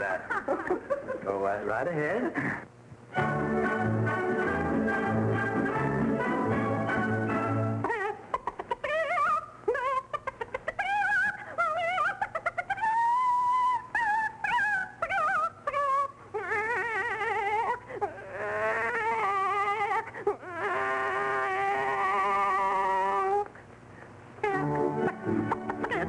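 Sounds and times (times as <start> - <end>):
woman singing imitating a hen: 7.9 - 17.1.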